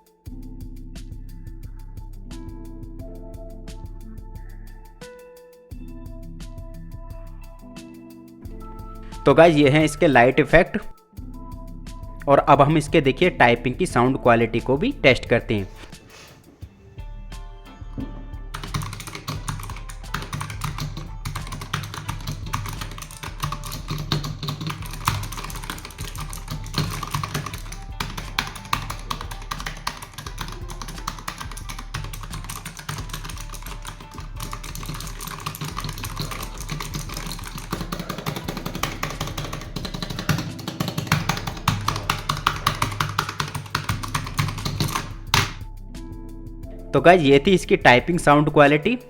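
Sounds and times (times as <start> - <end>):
background music: 0.0 - 49.0
mechanical keyboard typing: 18.5 - 45.6.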